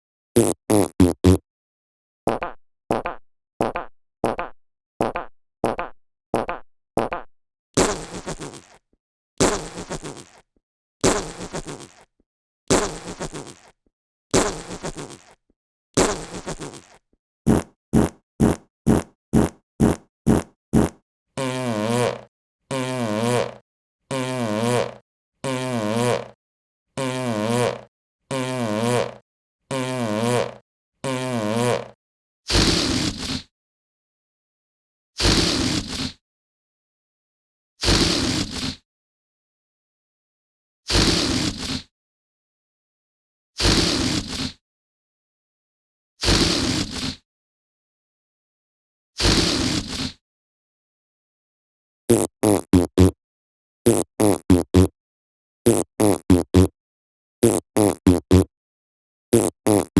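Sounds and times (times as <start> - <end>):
fart sound effects: 0.4 - 1.4, 7.8 - 8.8, 9.4 - 10.4, 11.0 - 12.1, 12.7 - 15.4, 16.0 - 26.4, 27.0 - 33.1, 46.2 - 47.1, 52.1 - 53.2, 53.9 - 54.9, 55.7 - 56.7, 57.4 - 58.5, 59.3 - 59.9.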